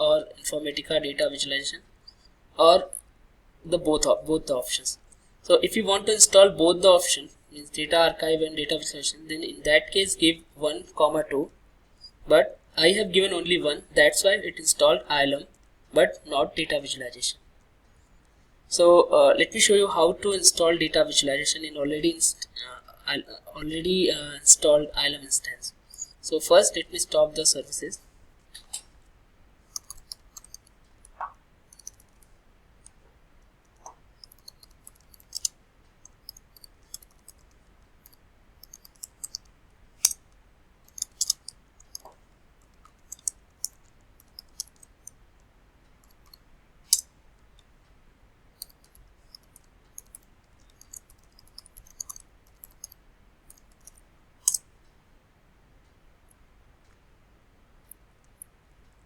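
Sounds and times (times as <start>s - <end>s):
computer keyboard typing: 29.7s - 32.3s, 33.7s - 40.2s, 40.8s - 45.2s, 48.6s - 54.6s.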